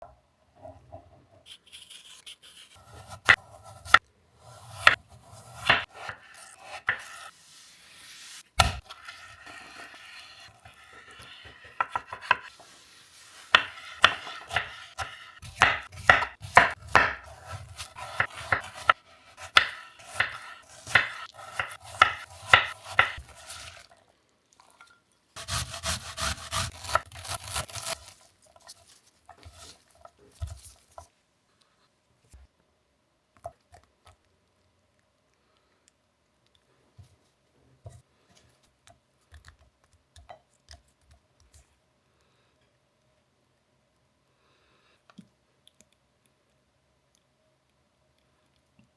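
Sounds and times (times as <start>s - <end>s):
knife chopping on wooden board: 4.6s - 7.3s, 8.6s - 12.6s, 13.5s - 23.8s, 25.4s - 28.1s.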